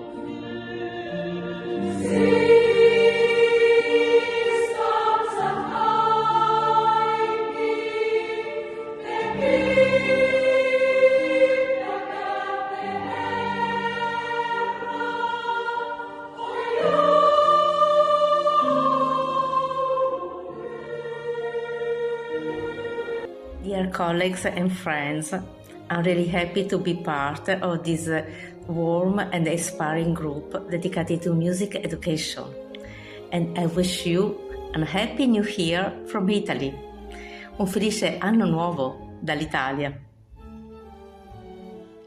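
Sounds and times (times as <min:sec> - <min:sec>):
choir singing in harmony: 0:00.0 - 0:23.6.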